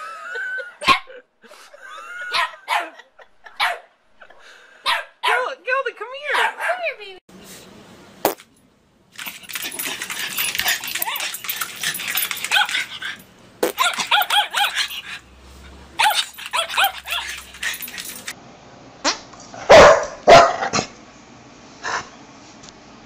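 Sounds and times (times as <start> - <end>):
dog barking and yipping: 2.3 - 3.9, 4.9 - 5.4, 6.3 - 6.9, 9.2 - 15.3, 16.0 - 18.3, 19.7 - 20.8.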